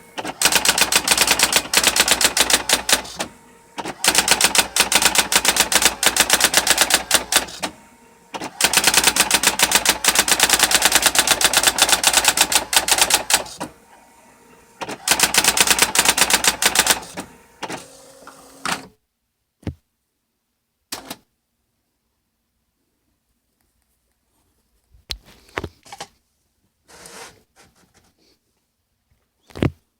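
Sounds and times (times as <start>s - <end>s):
brief mechanical whir: 0.0s - 19.0s
faint motor hum: 0.0s - 19.0s
typewriter printing strikes: 0.0s - 19.0s.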